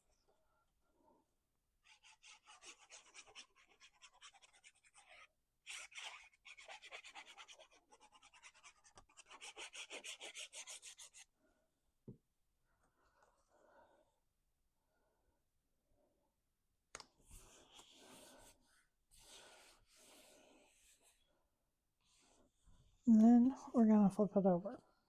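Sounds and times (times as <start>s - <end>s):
rubbing strokes on cardstock: 1.8s - 11.3s.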